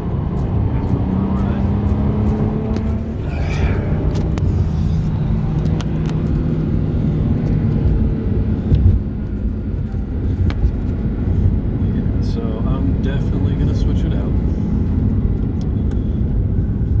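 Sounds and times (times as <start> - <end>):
car engine rumble: 0.0 - 17.0
road noise: 0.0 - 17.0.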